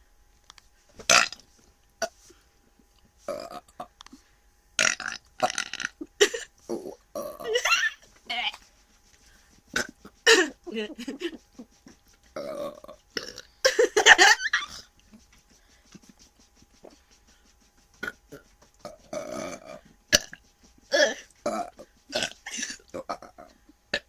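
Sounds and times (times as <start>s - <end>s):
person burping: 1.1s - 1.4s, 3.3s - 3.9s, 4.8s - 7.8s, 9.8s - 10.6s, 12.4s - 13.8s, 18.0s - 24.0s.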